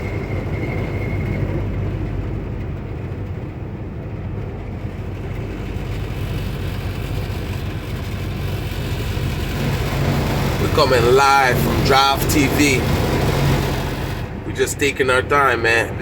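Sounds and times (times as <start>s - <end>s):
car driving on icy road: 0.0s - 16.0s.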